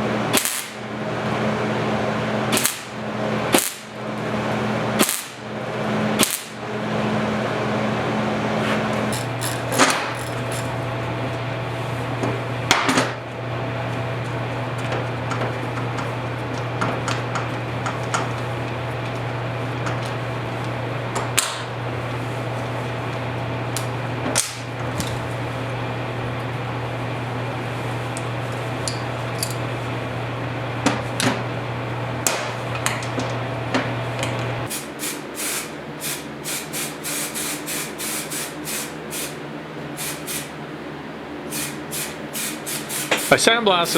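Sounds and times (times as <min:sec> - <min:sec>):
electric motor humming: 0:08.9 - 0:12.6
metal parts knocking: 0:09.1 - 0:10.8.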